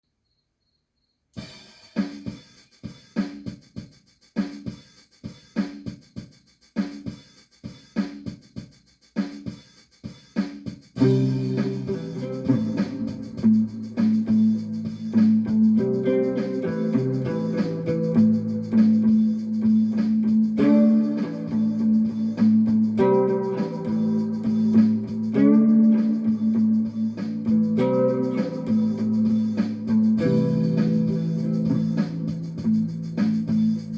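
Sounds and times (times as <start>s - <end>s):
drum kit groove: 1.4s - 33.9s
plucked string notes: 11.0s - 33.9s
string instrument drone: 11.0s - 33.9s.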